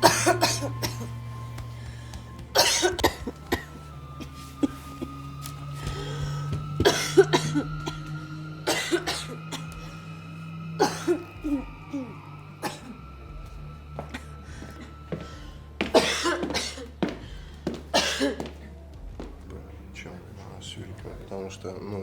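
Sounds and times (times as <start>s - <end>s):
person coughing: 0.0s - 1.1s, 2.6s - 5.2s, 6.8s - 9.8s, 10.8s - 13.0s, 15.8s - 16.9s, 17.9s - 18.6s
steady low hum: 0.0s - 22.0s.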